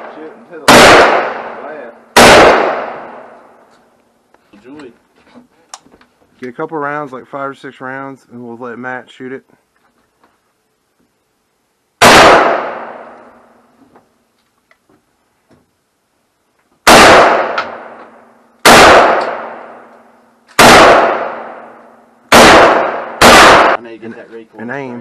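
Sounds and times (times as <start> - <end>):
rifle shots echoing: 0.0 - 3.5, 12.0 - 13.2, 16.8 - 19.9, 20.5 - 23.8.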